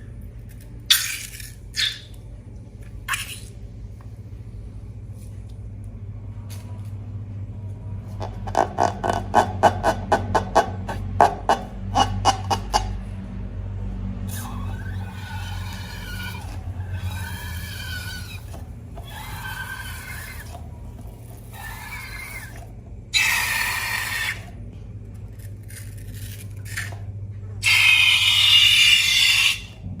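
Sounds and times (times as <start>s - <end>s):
rubber balloon squeaking: 14.3s - 24.6s.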